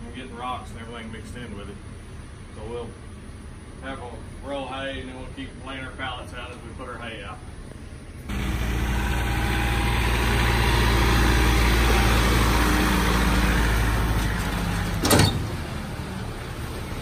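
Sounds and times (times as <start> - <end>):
vehicle engine running: 8.3 - 17.0.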